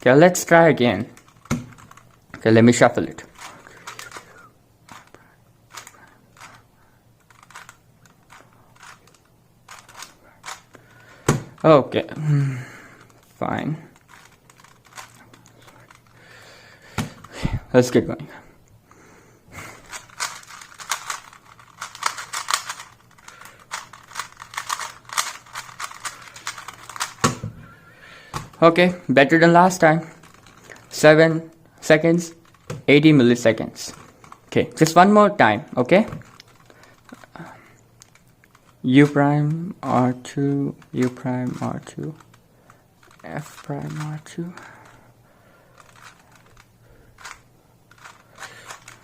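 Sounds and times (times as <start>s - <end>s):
plastic puzzle cube clicking: 1.2s - 2.2s, 7.2s - 10.9s, 14.0s - 16.2s, 19.9s - 27.4s, 36.1s - 37.3s, 38.0s - 38.8s, 40.1s - 45.0s, 45.7s - 49.0s
cube set down thump: 1.4s - 1.9s, 11.2s - 11.6s, 16.9s - 17.3s, 27.1s - 27.6s.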